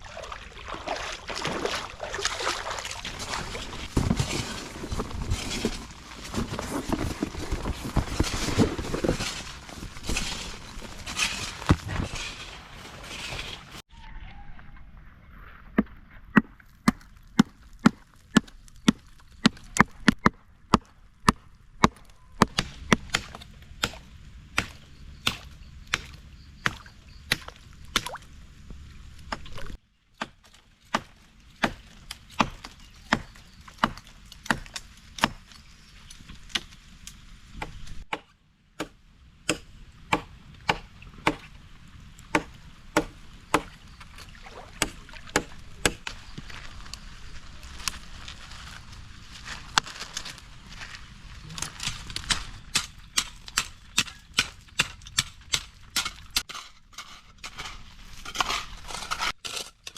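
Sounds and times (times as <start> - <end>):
blade chopping wood: 15.8 - 28.2, 30.2 - 35.4.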